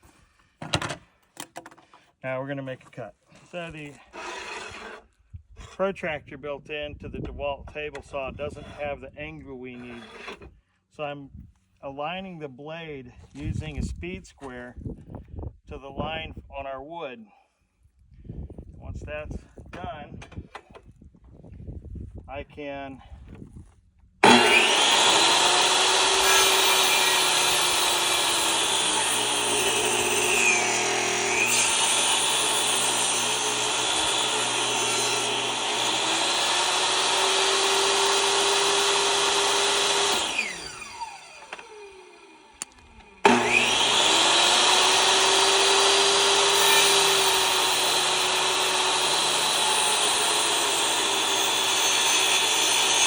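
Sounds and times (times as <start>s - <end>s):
table saw cutting wood: 4.1s - 5.1s, 9.8s - 10.5s, 24.2s - 53.0s
saw winding down whine: 24.2s - 53.0s.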